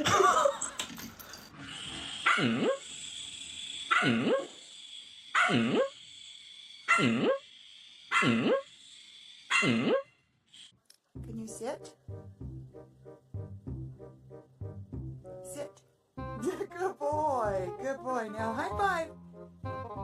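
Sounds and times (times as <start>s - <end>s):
dog barking: 2.2s - 2.8s, 3.9s - 4.5s, 5.4s - 5.9s, 6.9s - 7.4s, 8.1s - 8.7s, 9.5s - 10.0s.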